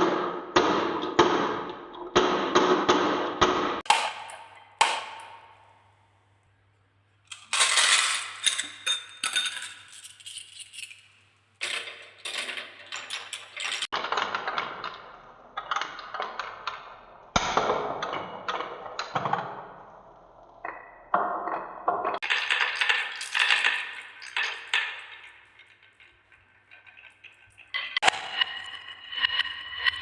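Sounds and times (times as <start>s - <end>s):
marbles rolling down wooden run: 22.2s - 29.8s.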